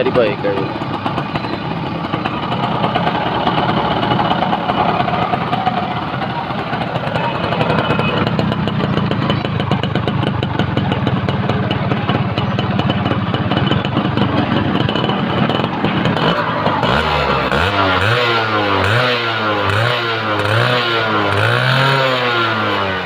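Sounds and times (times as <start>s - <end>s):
two-stroke engine running: 0.0s - 23.0s.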